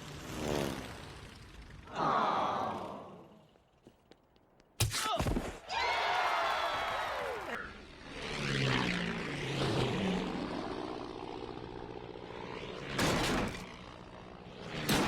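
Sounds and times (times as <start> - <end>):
engine drone: 0.0 - 3.8, 7.0 - 15.0.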